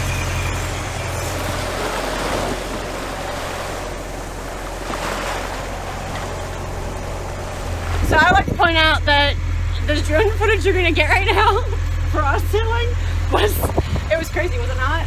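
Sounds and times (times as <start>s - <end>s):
rushing water: 0.0s - 10.6s
boat engine droning: 0.0s - 15.0s
wind: 0.0s - 15.0s.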